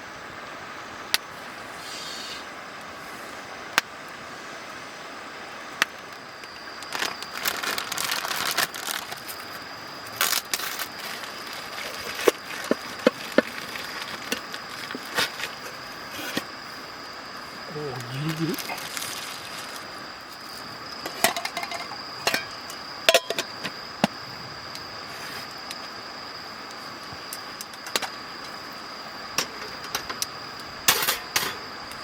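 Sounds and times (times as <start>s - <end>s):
campfire crackling and popping: 1.1s - 1.5s, 3.7s - 4.2s, 5.6s - 16.1s, 26.6s - 31.0s
thin high tone: 17.4s - 19.8s.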